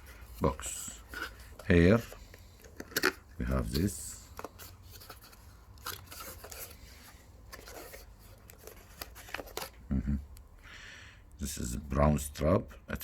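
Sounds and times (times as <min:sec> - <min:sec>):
packaging rustling: 0:00.0 - 0:09.8.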